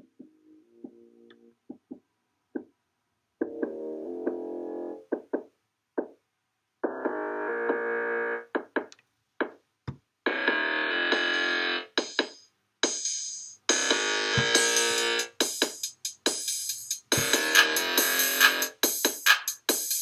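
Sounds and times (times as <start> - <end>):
drum machine hits: 13.7 - 20.0.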